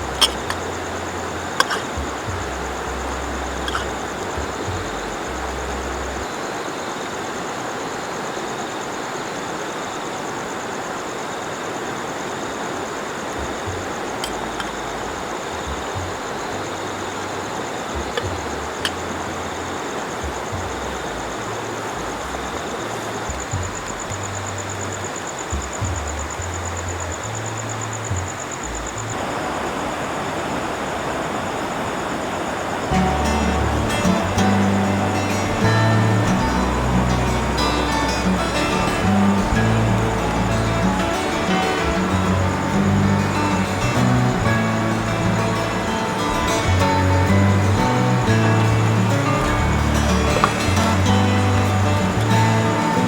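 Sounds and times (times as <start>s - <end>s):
flowing river water: 0.0s - 53.0s
high-pitched trill: 32.9s - 53.0s.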